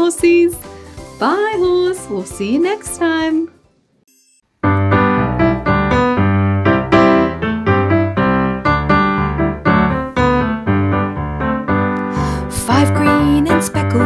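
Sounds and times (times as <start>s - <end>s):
bouncy piano notes: 4.6s - 14.0s.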